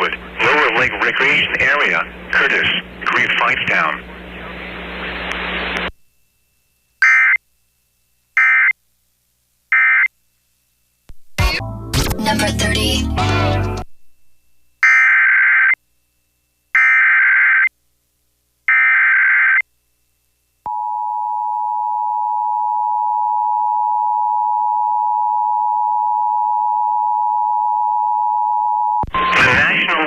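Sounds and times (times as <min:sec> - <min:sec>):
data tone bursts: 0:28.8 - 0:29.7.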